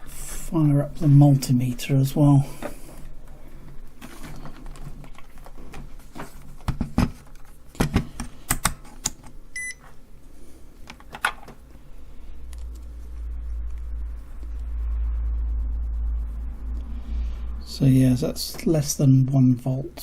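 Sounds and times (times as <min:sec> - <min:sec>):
short electronic beep: 0:09.6 - 0:09.8
low hum: 0:11.6 - 0:20.0.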